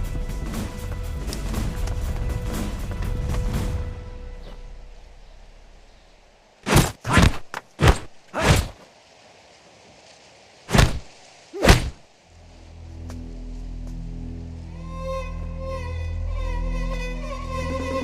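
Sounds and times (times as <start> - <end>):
slow string music: 0.0 - 5.9, 12.3 - 18.0
short dull thuds: 6.6 - 8.8, 10.7 - 12.0.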